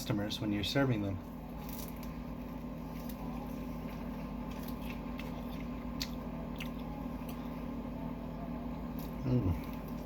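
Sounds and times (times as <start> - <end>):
steady low hum: 0.0 - 10.0
chewing with wet mouth clicks: 2.9 - 7.4.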